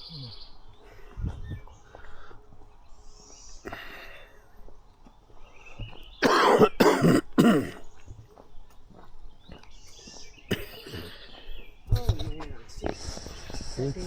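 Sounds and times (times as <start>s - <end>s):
person coughing: 6.2s - 7.8s, 10.5s - 11.2s.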